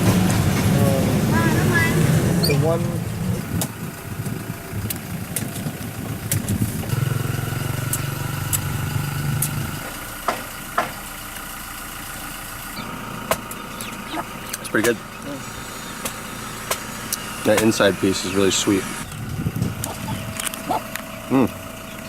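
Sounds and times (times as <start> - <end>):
engine idling: 0.0 - 22.0
sharp knocks: 10.3 - 11.0.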